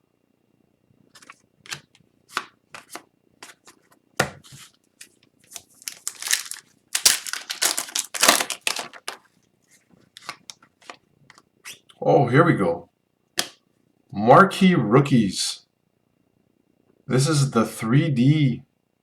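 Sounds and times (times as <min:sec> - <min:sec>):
card pack wrapper tearing and crinkling: 0:05.5 - 0:09.3.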